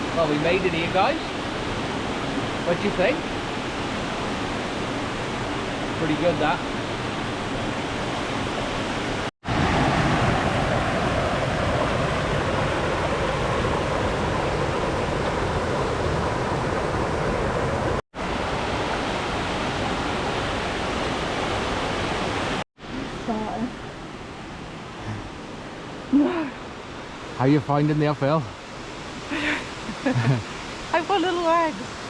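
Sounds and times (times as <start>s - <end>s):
waterfall rushing: 0.0s - 23.4s.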